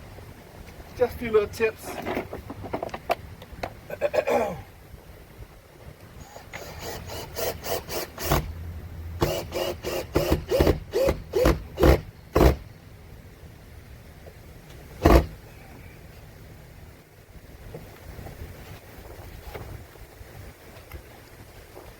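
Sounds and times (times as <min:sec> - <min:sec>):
power drill driving screw into wood: 0:06.2 - 0:08.5, 0:09.2 - 0:12.6, 0:15.0 - 0:15.4.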